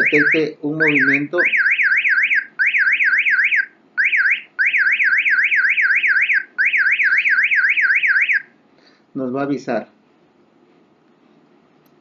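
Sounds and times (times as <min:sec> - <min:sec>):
phone alarm electronic warble: 0:00.0 - 0:08.5.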